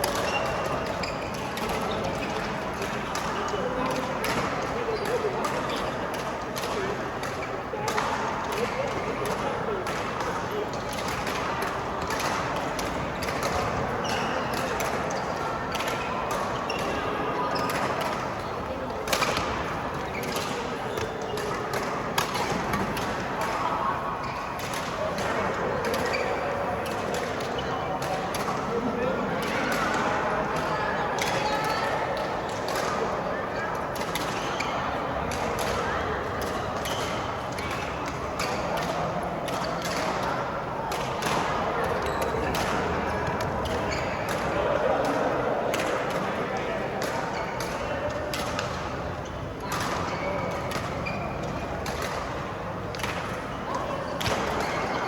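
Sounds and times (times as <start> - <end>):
background noise: 0.0 - 55.0
racket hitting shuttlecock: 19.0 - 23.6.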